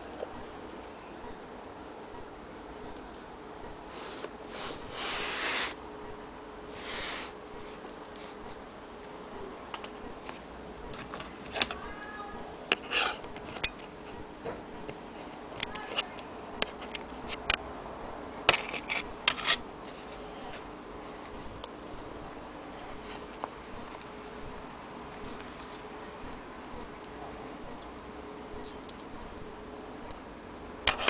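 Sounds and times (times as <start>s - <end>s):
brushing rubs: 3.9s - 5.8s, 6.7s - 8.6s.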